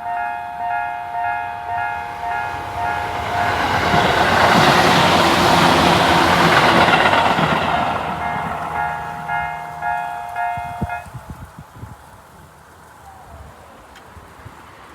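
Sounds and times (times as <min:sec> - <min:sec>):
level crossing warning bell: 0:00.0 - 0:11.3
train passing: 0:00.0 - 0:11.8.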